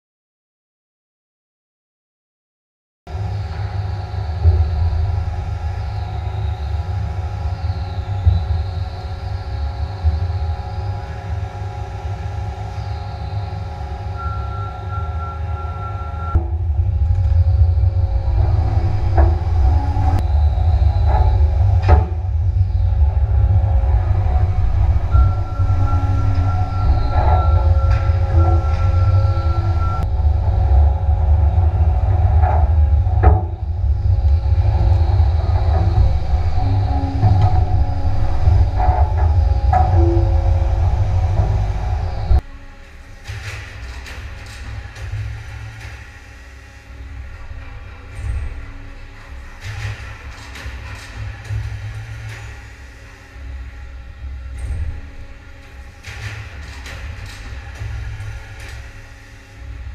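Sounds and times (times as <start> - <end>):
low rumble: 3.1 - 13.3, 15.9 - 43.4
hydraulic power unit humming: 3.1 - 42.4
high whine: 3.1 - 59.9.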